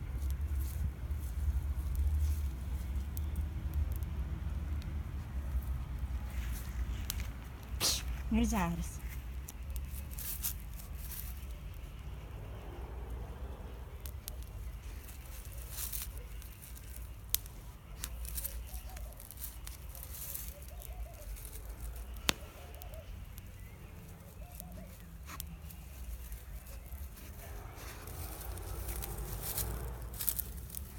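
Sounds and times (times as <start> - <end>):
campfire crackling: 0.0 - 30.9
low steady rumble: 23.0 - 30.9.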